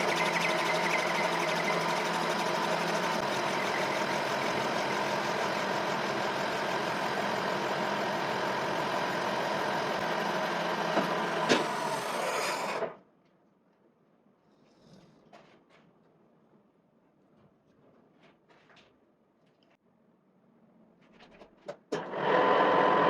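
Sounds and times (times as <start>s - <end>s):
lathe running with a whine: 0.0s - 13.0s, 22.0s - 23.0s.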